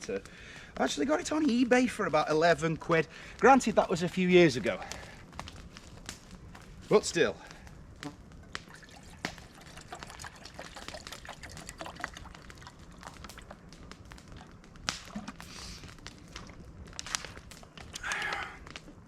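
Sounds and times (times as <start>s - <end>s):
small crackles and ticks: 0.0s - 19.0s
water pouring into metal pan: 8.7s - 12.8s.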